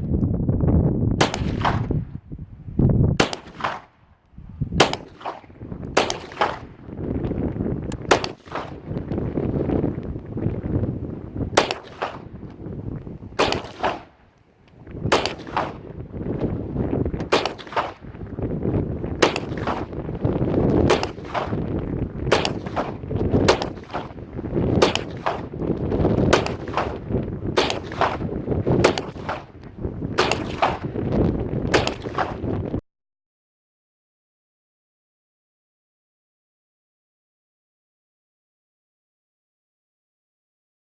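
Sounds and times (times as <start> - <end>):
rifle gunshots: 1.2 - 2.1, 3.2 - 4.1, 4.7 - 32.7.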